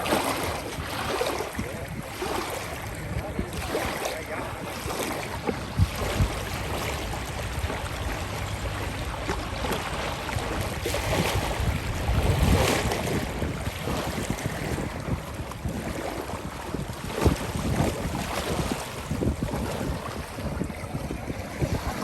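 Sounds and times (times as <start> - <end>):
river waves lapping: 0.0 - 22.0.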